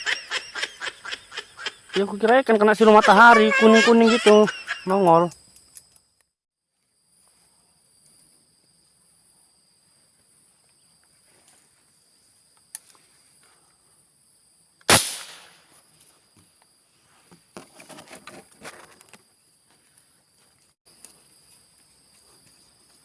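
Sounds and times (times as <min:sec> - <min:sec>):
high-pitched insect buzz: 0:02.3 - 0:06.2
airgun shot: 0:14.9 - 0:15.7.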